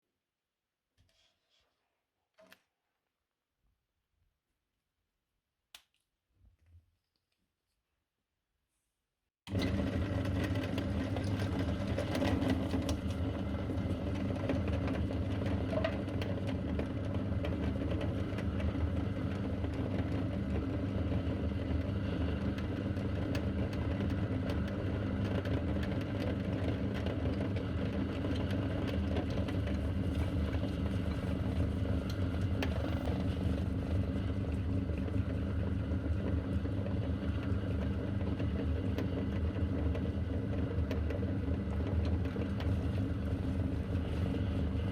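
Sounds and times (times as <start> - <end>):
meat grinder motor hum: 9.5 - 44.9.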